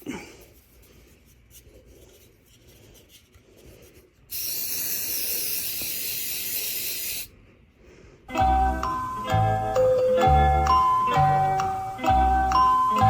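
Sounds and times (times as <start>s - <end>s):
aerosol can hissing: 4.3s - 7.3s.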